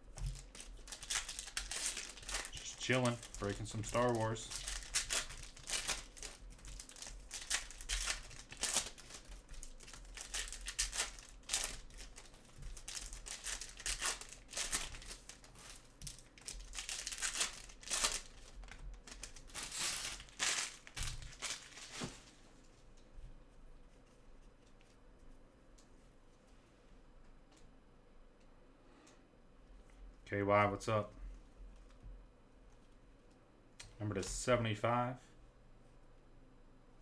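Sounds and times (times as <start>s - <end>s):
packaging crinkling and tearing: 0.1s - 22.4s.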